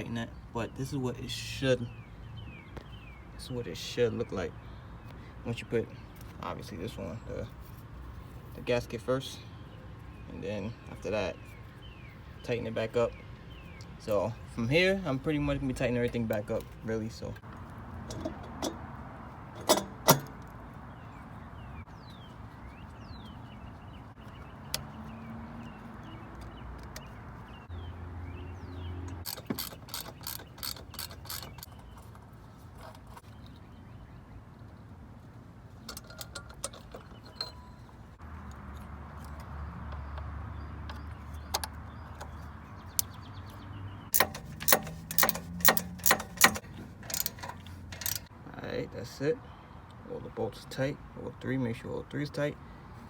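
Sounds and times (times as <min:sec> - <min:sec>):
hand tools clinking on metal: 0:44.1 - 0:48.3
sharp click: 0:44.1 - 0:48.3.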